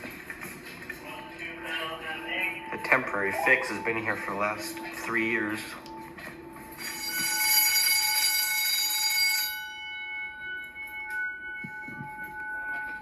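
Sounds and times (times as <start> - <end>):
fire alarm bell ringing: 6.0 - 13.0.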